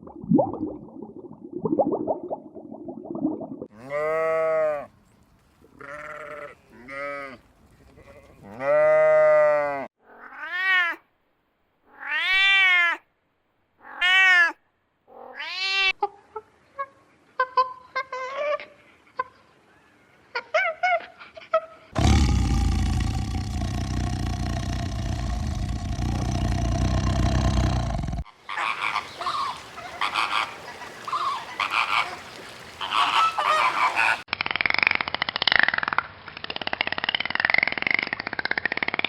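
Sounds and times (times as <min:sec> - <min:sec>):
fowl honking calls: 0:28.4 - 0:34.2.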